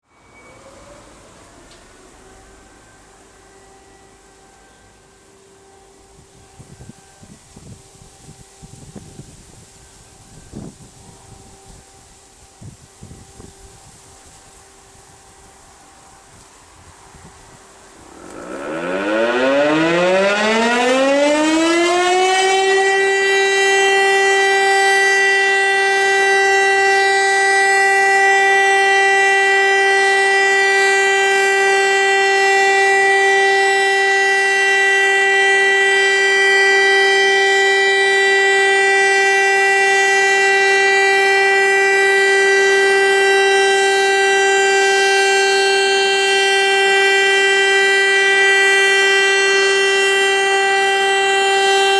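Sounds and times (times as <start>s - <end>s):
siren winding up: 17.8s - 51.9s.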